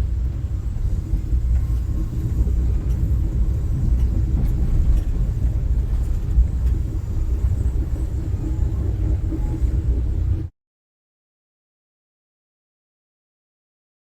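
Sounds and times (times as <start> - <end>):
car rumbling while moving: 0.0 - 10.5.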